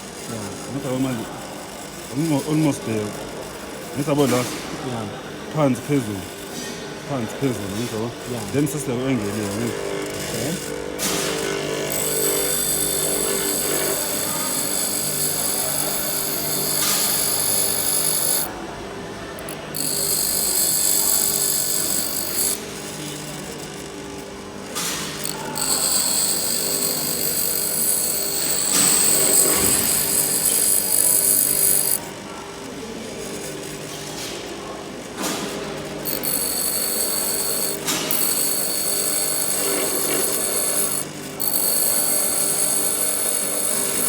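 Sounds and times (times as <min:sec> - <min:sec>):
drill bit grinding on wheel: 0:00.0 - 0:18.6, 0:19.4 - 0:34.5, 0:35.1 - 0:44.0
pedestal grinder running: 0:00.0 - 0:44.0.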